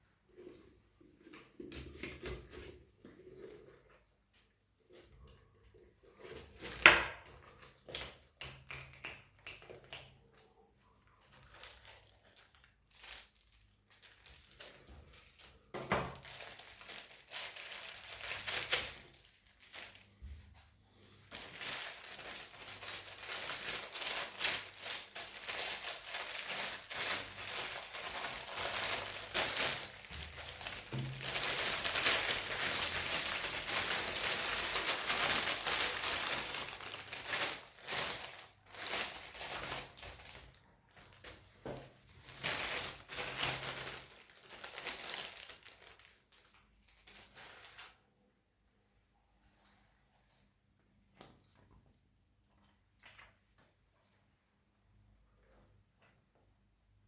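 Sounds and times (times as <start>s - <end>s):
paper or plastic crinkling: 11.1s - 48.0s.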